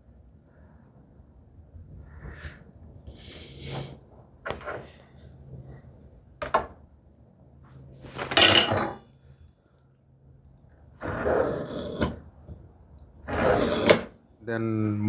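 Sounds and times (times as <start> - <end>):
tools clattering: 8.2 - 9.0.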